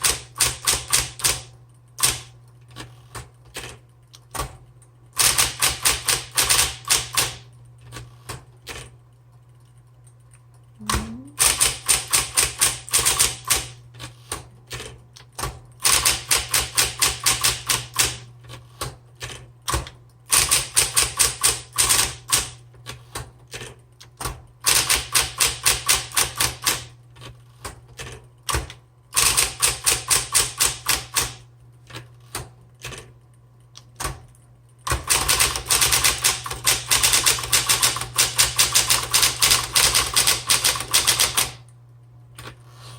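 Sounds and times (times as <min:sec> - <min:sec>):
typewriter motor humming: 0:05.2 - 0:08.9, 0:10.8 - 0:14.9, 0:15.8 - 0:23.7, 0:28.5 - 0:31.4, 0:34.8 - 0:41.7.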